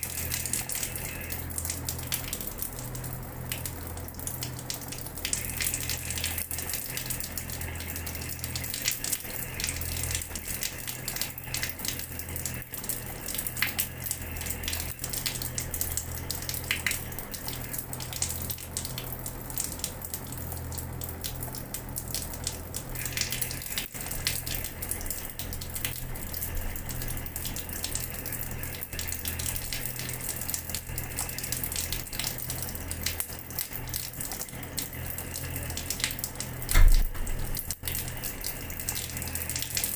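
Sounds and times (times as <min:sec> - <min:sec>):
low steady hum: 0:00.0 - 0:39.9
tap water splashing on floor: 0:35.8 - 0:38.2.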